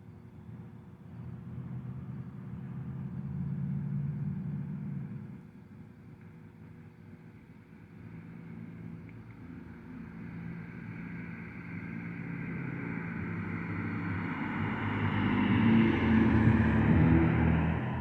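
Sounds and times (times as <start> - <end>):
car passing: 10.6 - 18.0.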